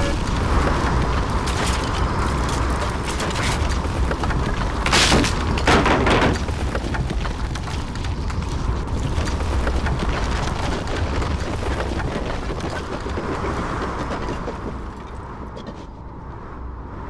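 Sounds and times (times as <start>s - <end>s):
loud rushing wind gusts: 0.0s - 17.0s
storm wind rumbling: 0.0s - 17.0s.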